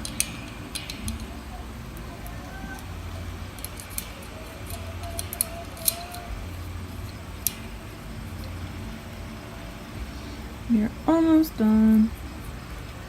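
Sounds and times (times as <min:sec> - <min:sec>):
clicks of cage parts fitting: 0:00.0 - 0:02.9, 0:03.5 - 0:07.8
low steady hum: 0:00.0 - 0:13.0.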